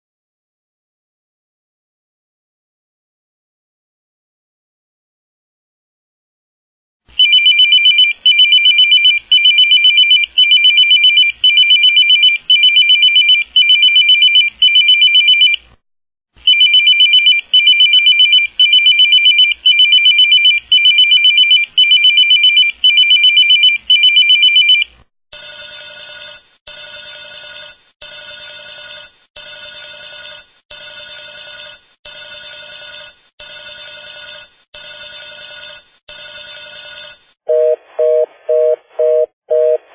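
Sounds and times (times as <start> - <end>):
bright trilling telephone ring: 25.4 - 37.4
warbling electronic telephone ring: 25.4 - 37.4.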